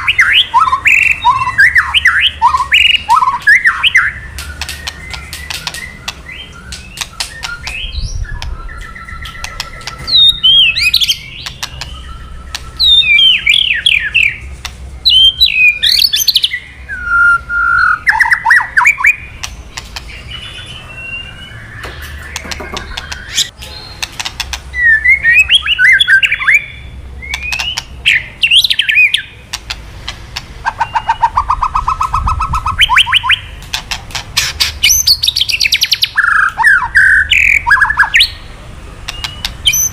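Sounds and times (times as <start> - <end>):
bird singing whistled phrases: 0.0 - 14.4, 15.1 - 19.3, 20.1 - 24.0, 24.8 - 29.3, 30.7 - 33.6, 34.8 - 38.4, 39.1 - 39.9
bird crackling clicks: 4.4 - 7.8, 22.0 - 24.7.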